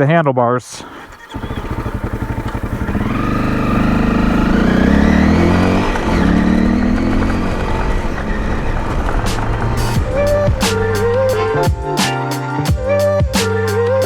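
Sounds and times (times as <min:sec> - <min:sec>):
motorcycle engine accelerating: 0:00.9 - 0:12.3.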